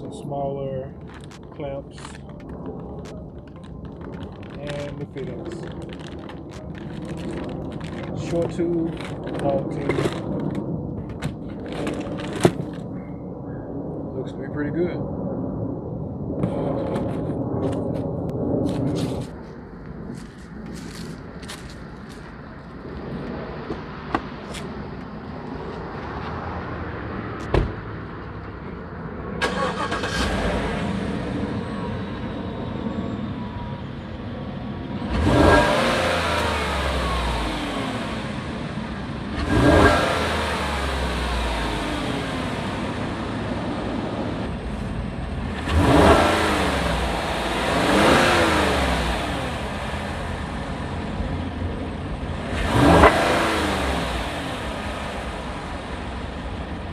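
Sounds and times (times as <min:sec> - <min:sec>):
engine revving: 0:29.4 - 0:31.7, 0:35.0 - 0:44.6, 0:45.4 - 0:51.2, 0:52.3 - 0:56.6
truck engine starting and idling: 0:29.4 - 0:32.4.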